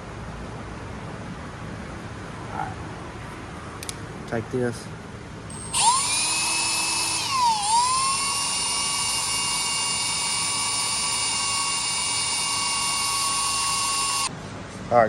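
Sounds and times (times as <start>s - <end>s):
electric drill whining: 5.5s - 14.3s.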